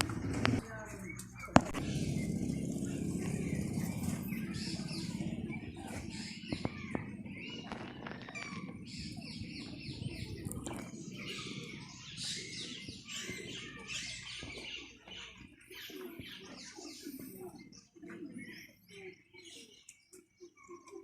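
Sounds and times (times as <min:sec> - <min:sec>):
low background rumble: 0:00.0 - 0:14.4
birds chirping: 0:00.0 - 0:21.0.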